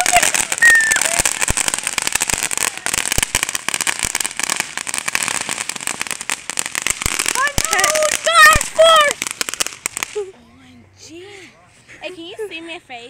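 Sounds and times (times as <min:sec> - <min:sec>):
fireworks hiss: 0:00.0 - 0:10.3
fireworks crackling: 0:00.0 - 0:11.2.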